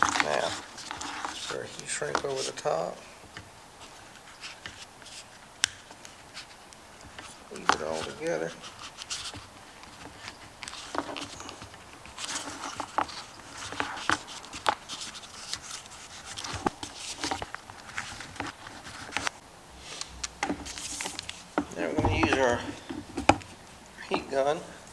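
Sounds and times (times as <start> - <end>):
hands handling wires: 0.0 - 24.9.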